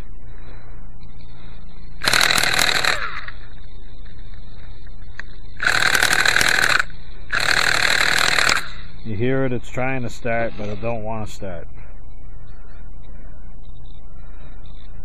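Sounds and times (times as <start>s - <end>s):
model engine turning over: 2.0s - 3.4s, 5.6s - 8.8s.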